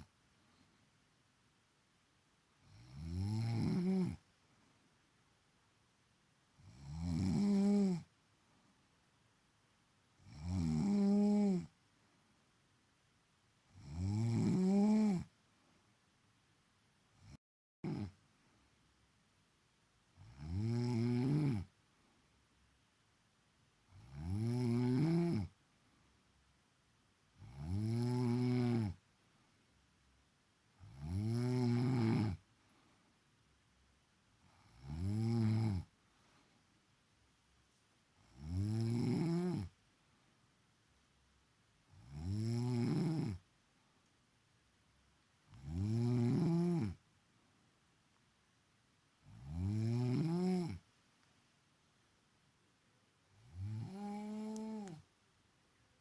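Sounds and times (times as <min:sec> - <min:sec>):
woman snoring: 0:02.6 - 0:04.2, 0:06.6 - 0:08.1, 0:10.2 - 0:11.7, 0:13.7 - 0:15.3, 0:17.2 - 0:18.2, 0:20.2 - 0:21.7, 0:23.9 - 0:25.6, 0:27.4 - 0:29.0, 0:30.8 - 0:32.4, 0:34.5 - 0:35.9, 0:38.2 - 0:39.7, 0:41.9 - 0:43.4, 0:45.5 - 0:47.0, 0:49.3 - 0:50.8, 0:53.4 - 0:55.0.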